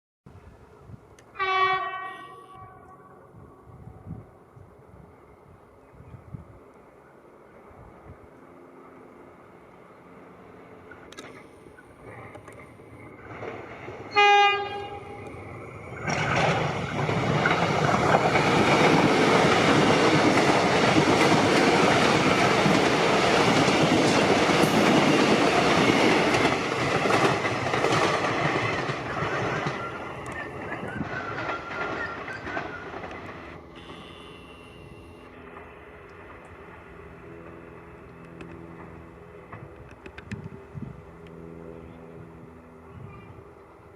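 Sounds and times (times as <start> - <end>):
train passing with rumble: 0.3 - 43.9
train horn blast: 1.3 - 3.8, 14.1 - 15.3, 33.7 - 35.5
rail clatter: 12.0 - 33.6.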